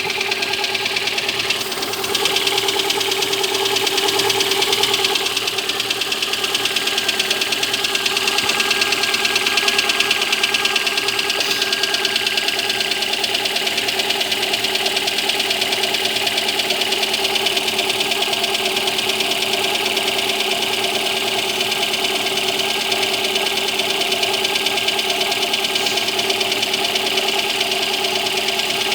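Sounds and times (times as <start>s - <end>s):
car engine knocking tick: 0.0s - 28.9s.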